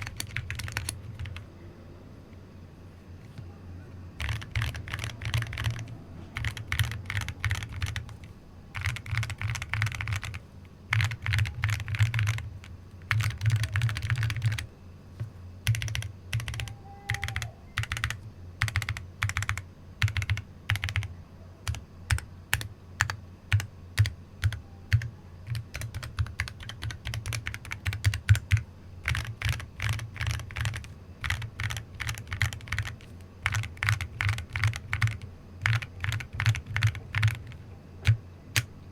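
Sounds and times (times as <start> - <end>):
typing on mechanical keyboard: 0.0 - 1.4, 4.2 - 14.7, 15.6 - 38.7.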